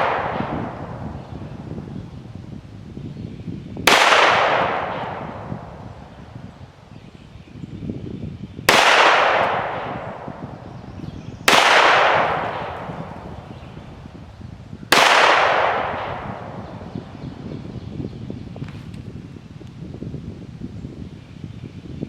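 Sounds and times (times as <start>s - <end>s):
handgun shots: 8.7s - 10.4s, 11.5s - 13.8s, 14.9s - 16.6s.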